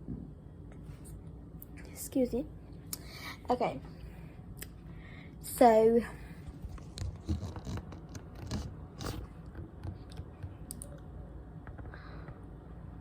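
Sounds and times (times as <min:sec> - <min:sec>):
scratching handling noise: 0:06.4 - 0:10.6.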